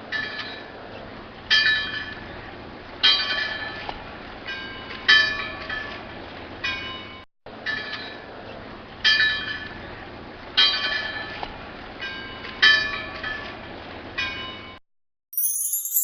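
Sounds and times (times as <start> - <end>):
bright jingling: 15.3 - 16.0
buoy bell clanging: 15.4 - 16.0.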